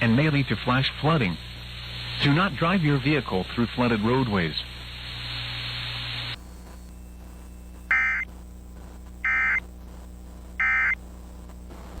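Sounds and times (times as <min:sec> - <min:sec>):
buzzy digital data tones: 0:05.3 - 0:11.1.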